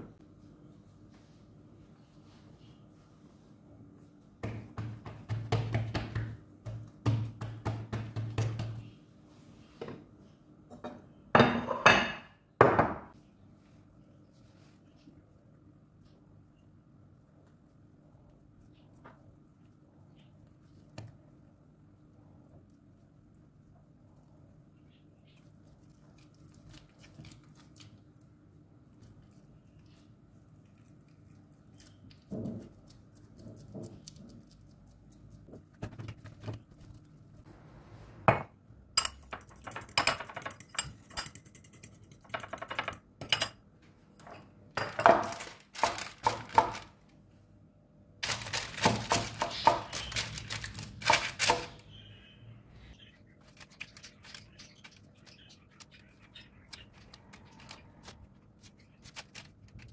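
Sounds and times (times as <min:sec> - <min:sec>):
dishes and utensils clattering: 0:10.7 - 0:13.1, 0:38.4 - 0:43.6.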